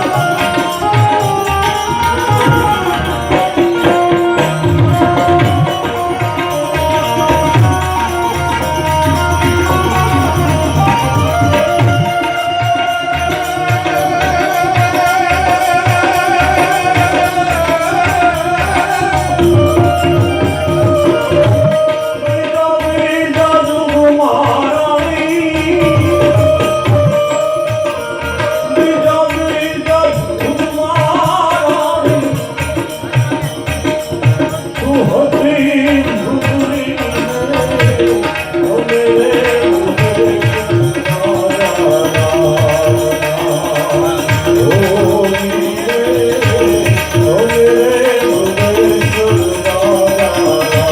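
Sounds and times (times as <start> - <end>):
held bending melody line: 0.0 - 23.2
tabla rhythm: 0.0 - 50.9.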